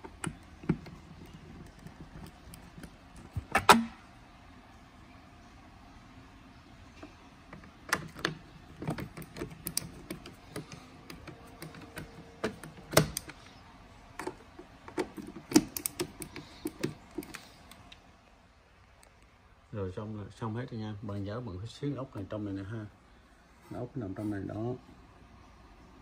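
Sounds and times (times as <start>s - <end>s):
parts clicking and knocking: 0.0s - 4.0s, 7.0s - 18.0s.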